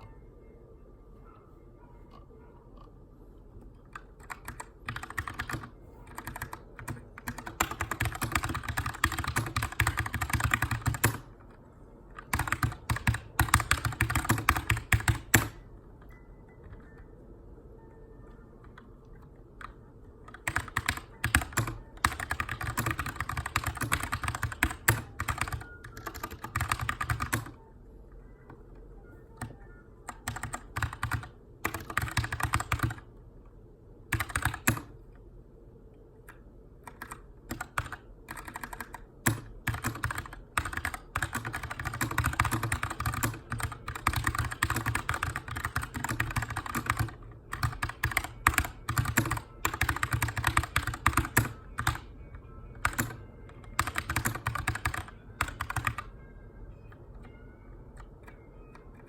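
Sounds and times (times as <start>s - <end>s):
mechanical keyboard typing: 3.8s - 15.6s, 18.3s - 27.7s, 29.4s - 33.1s, 34.1s - 35.0s, 36.3s - 52.1s, 52.7s - 56.1s.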